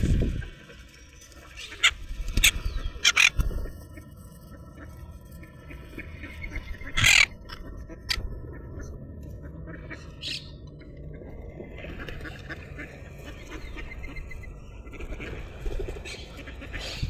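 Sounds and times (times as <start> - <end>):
ducks quacking: 1.6 - 3.4, 6.0 - 8.9, 11.8 - 17.0.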